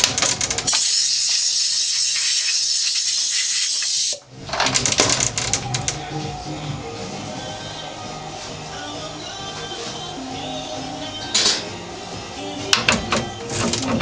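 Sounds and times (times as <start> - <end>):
high air hiss: 0.7 - 4.2.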